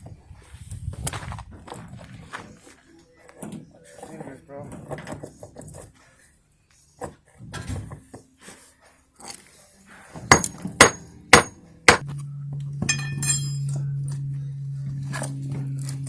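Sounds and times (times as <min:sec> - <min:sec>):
hammer striking concrete: 0:10.3 - 0:12.0, 0:12.8 - 0:13.7
low machine hum: 0:10.4 - 0:16.0
light clinks: 0:12.8 - 0:14.2.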